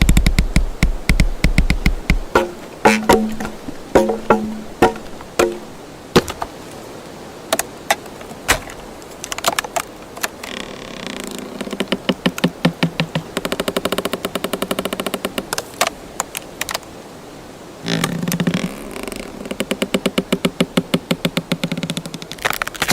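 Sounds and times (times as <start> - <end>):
wood creaking: 0.0 - 6.6, 7.5 - 15.5, 17.8 - 22.9
wood knocks and snaps: 0.0 - 6.6, 7.5 - 10.4, 19.7 - 22.9.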